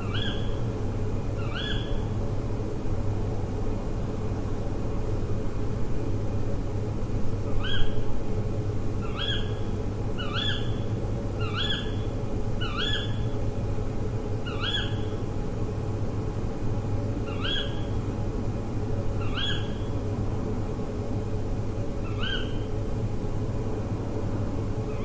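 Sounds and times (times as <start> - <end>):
bird calling rising note: 1.4 - 2.0.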